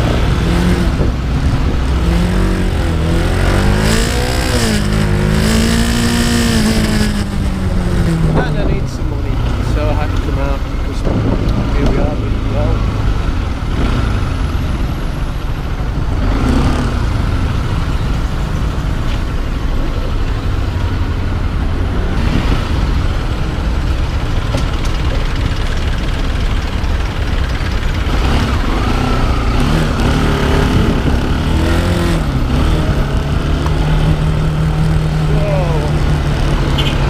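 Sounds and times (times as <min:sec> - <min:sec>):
road and traffic noise: 0:00.0 - 0:37.0
motorbike engine running: 0:19.6 - 0:37.0.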